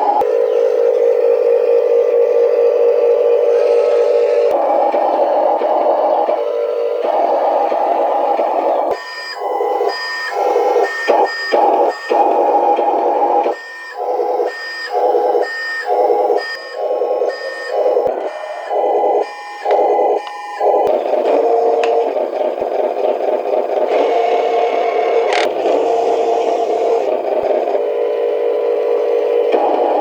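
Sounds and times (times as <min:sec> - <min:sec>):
toy truck motor running: 0:18.8 - 0:27.1.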